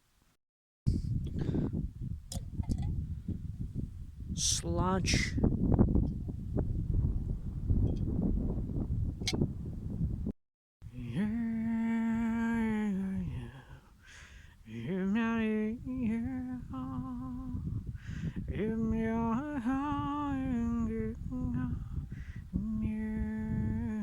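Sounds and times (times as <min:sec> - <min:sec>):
person humming a slow tune: 0:10.9 - 0:13.9, 0:14.7 - 0:17.8, 0:18.5 - 0:24.0.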